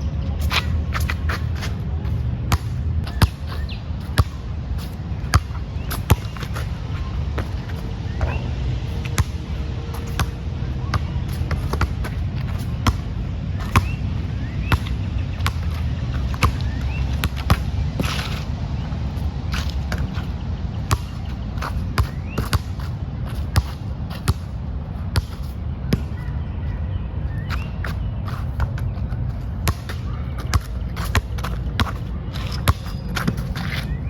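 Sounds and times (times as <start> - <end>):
steady low rumble: 0.0 - 34.0
basketball bouncing on court: 2.5 - 4.5, 5.2 - 8.4, 9.0 - 18.3, 19.5 - 26.3, 29.6 - 33.8.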